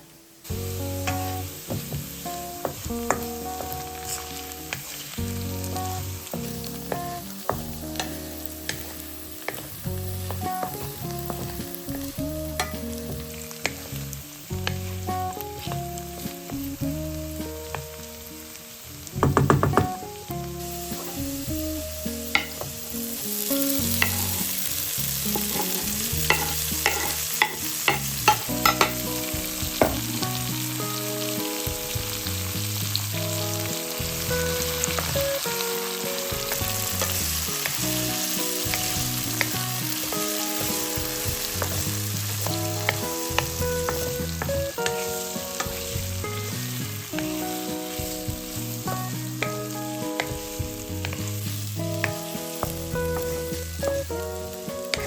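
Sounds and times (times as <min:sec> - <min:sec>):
food sizzling in a pan: 0:00.0 - 0:55.0
slow background melody: 0:00.0 - 0:55.0
utensil scraping a pan: 0:23.8 - 0:29.1.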